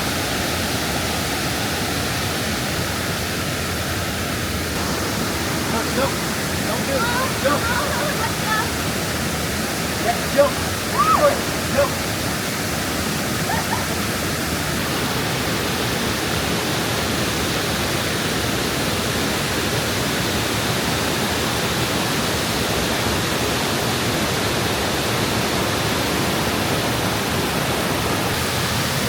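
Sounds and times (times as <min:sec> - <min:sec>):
waterfall rushing: 0:00.0 - 0:29.0.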